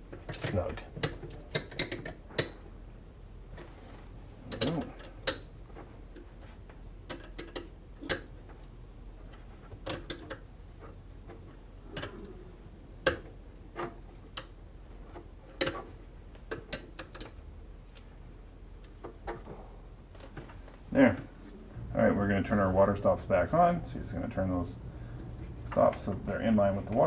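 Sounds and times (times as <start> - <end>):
clinks of tools and metal fittings: 4.5 - 6.0.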